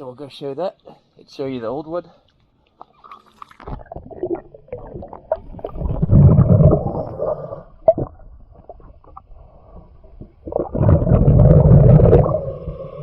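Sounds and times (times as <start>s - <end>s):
underwater regulator exhale bubbling: 3.2s - 13.0s.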